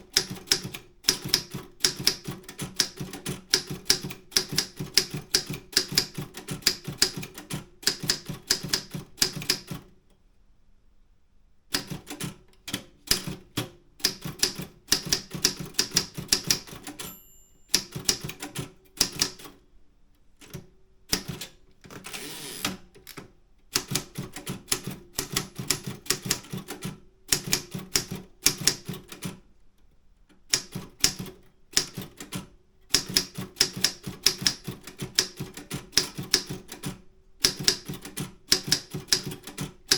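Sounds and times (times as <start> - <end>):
typewriter key strikes: 0.1 - 9.8, 14.0 - 19.6, 30.5 - 39.9
typewriter carriage return: 11.8 - 19.6, 20.4 - 29.4
typewriter bell ding: 16.9 - 18.3.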